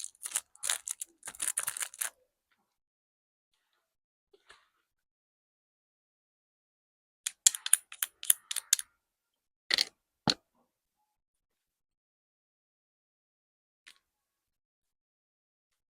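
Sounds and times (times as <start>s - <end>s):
small wooden pieces clicking: 0.0s - 2.1s, 7.3s - 8.8s.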